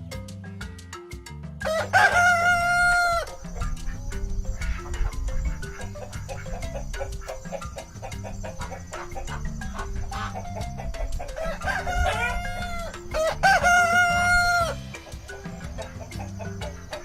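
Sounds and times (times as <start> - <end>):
background music with a beat: 0.0 - 17.0
rooster crowing: 1.6 - 17.0.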